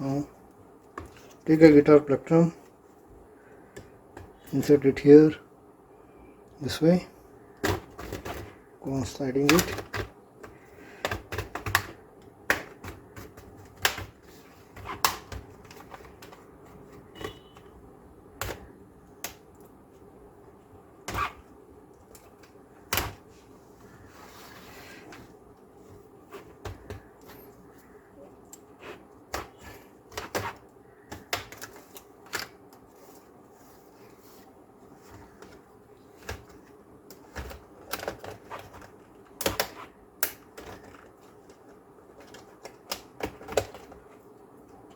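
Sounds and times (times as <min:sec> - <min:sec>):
plastic clips snapping loose: 0:37.1 - 0:41.6.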